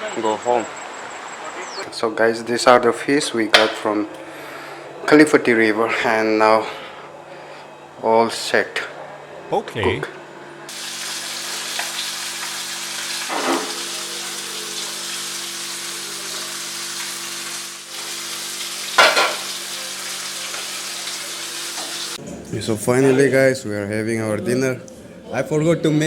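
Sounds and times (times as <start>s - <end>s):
fish sizzling in hot oil: 10.7s - 22.2s.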